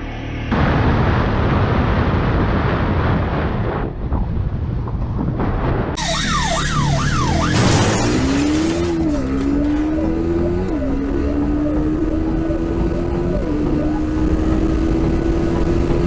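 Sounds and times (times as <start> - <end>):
rushing wind: 0.5 - 6.0
motorcycle engine rumble: 4.0 - 16.0
siren wailing: 6.0 - 14.5
engine note climbing: 6.0 - 16.0.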